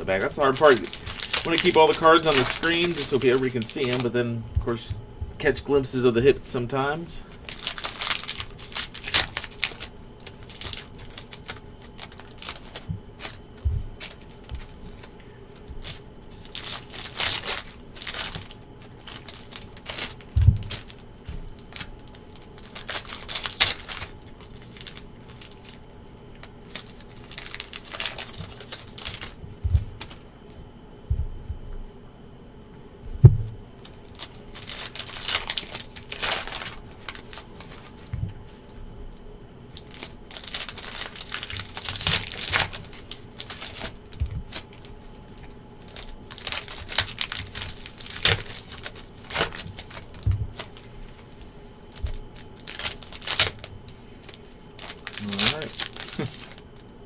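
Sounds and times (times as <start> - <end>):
card pack wrappers tearing: 0.0 - 29.4, 33.8 - 38.1, 39.7 - 56.8
soft thumps: 4.4 - 5.5, 31.1 - 31.8, 33.0 - 33.7.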